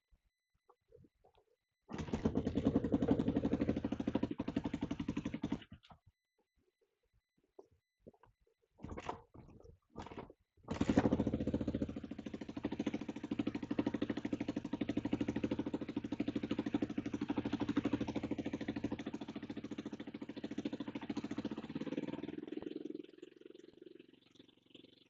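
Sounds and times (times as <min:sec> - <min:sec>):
motorcycle engine idling: 0:01.9 - 0:05.9, 0:10.9 - 0:25.0.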